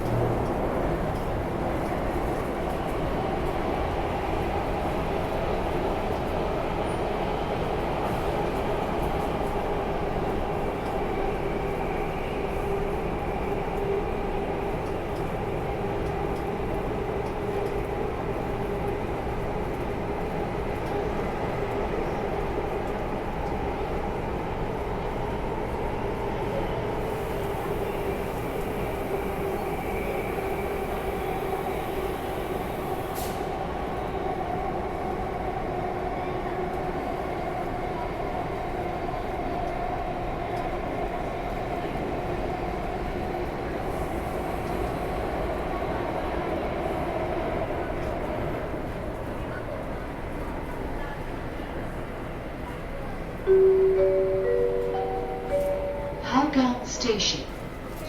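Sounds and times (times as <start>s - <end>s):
metro train wheels rumbling: 0.0s - 58.0s.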